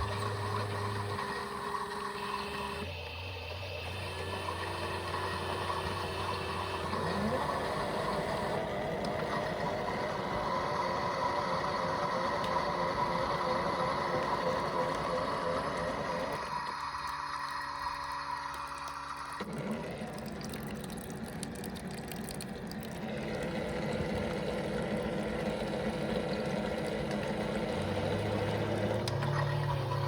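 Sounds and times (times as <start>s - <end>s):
toy washing machine motors whining: 0.0s - 20.7s, 22.9s - 30.0s.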